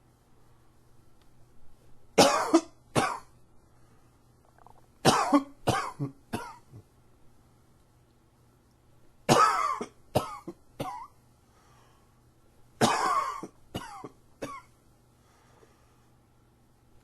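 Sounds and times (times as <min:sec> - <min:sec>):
man coughing: 0:12.8 - 0:14.7.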